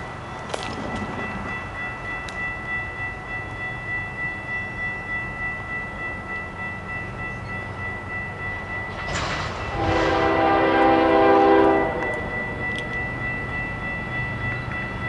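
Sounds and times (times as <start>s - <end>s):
train rumble: 0.0s - 15.0s
locomotive horn blast: 9.7s - 12.4s.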